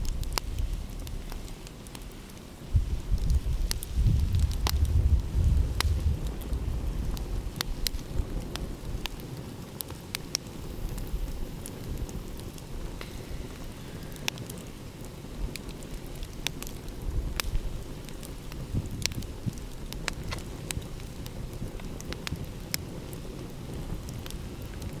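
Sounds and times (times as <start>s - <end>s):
wood fire crackling and popping: 0.0s - 25.0s
low rumble: 2.8s - 7.6s.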